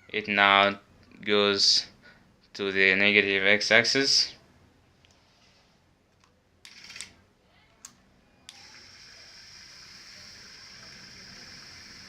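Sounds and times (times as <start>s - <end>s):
click: 7.8s - 8.6s.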